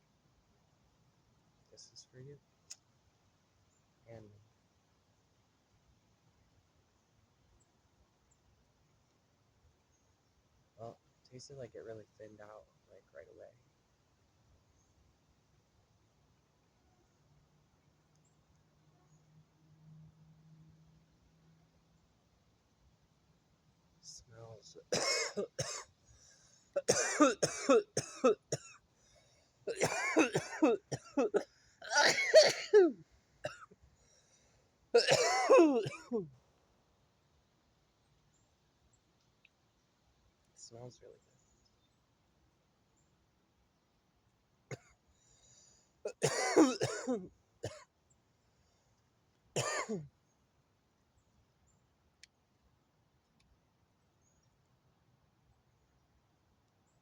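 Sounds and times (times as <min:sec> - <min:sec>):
man coughing: 0:24.9 - 0:25.8, 0:26.8 - 0:28.7, 0:29.7 - 0:33.7, 0:35.0 - 0:36.3, 0:44.7 - 0:44.9, 0:46.1 - 0:47.8, 0:49.6 - 0:50.0.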